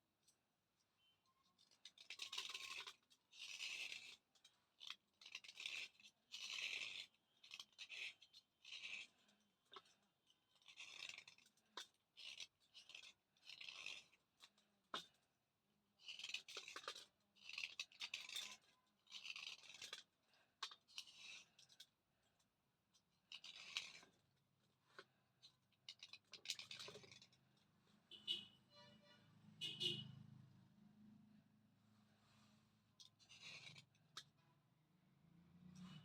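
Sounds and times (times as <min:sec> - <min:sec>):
slate pencil scratching: 0:01.6 - 0:14.6, 0:16.0 - 0:21.8, 0:23.3 - 0:24.2, 0:25.9 - 0:27.4, 0:33.0 - 0:34.4.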